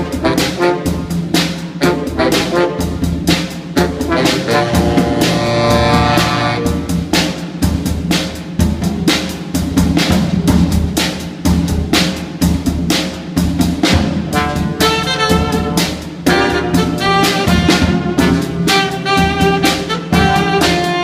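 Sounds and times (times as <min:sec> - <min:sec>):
bass line: 0:00.0 - 0:07.2, 0:13.8 - 0:21.0
horns: 0:00.0 - 0:07.4, 0:13.9 - 0:21.0
bass drum and snare hits: 0:00.0 - 0:21.0.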